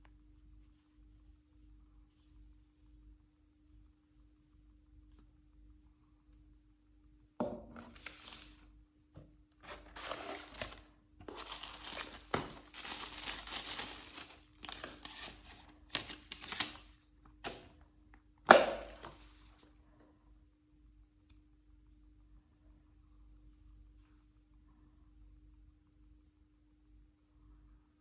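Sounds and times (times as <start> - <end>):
packaging crinkling and rustling: 7.9 - 8.6, 9.6 - 17.6.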